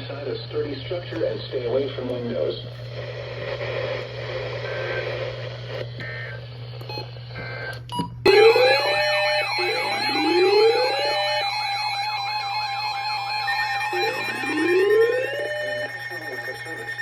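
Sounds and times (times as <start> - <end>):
broadcast hum and hiss: 0.0 - 17.0
steady attention tone: 7.9 - 17.0
fast warbling tones: 8.3 - 17.0
rising siren wails: 8.3 - 17.0.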